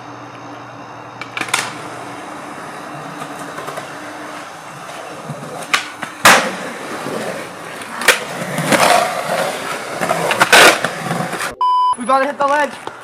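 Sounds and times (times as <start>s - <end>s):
skateboard wheels rolling on pavement: 0.0s - 11.6s, 12.2s - 13.0s
skateboard clacks: 1.2s - 11.5s.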